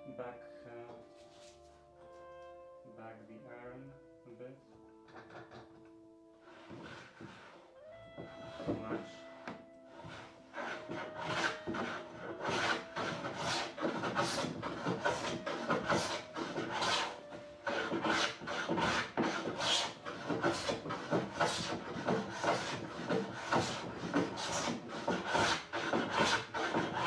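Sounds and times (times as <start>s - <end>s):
hand tool rasping on wooden door: 6.5s - 7.6s, 8.2s - 27.0s.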